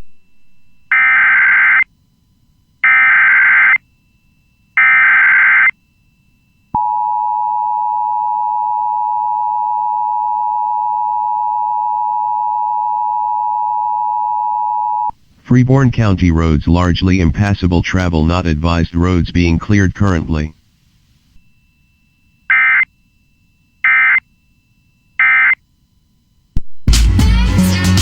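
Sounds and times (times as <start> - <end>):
screechy digital data tones: 2.8 - 3.8, 4.8 - 5.8, 22.5 - 22.9, 23.8 - 24.2, 25.2 - 25.6.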